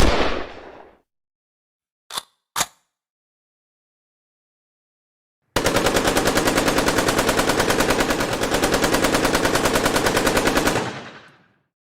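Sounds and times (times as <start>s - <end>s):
assault rifle automatic fire: 5.6s - 11.5s.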